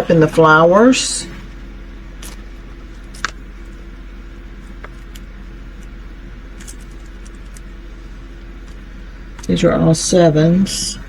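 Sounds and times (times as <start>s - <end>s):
steady low hum: 0.0s - 11.0s
light clicks of small items: 2.2s - 3.9s, 4.6s - 9.6s.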